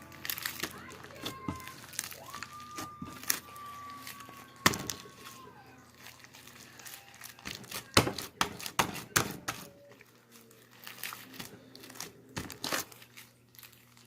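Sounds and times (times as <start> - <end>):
thin high tone: 1.4 - 7.2.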